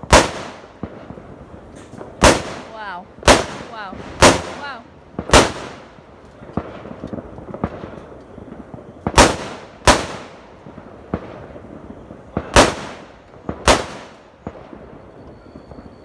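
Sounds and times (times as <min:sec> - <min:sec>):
faint fireworks pops: 0:00.0 - 0:16.0
fireworks bangs echoing: 0:00.0 - 0:16.0.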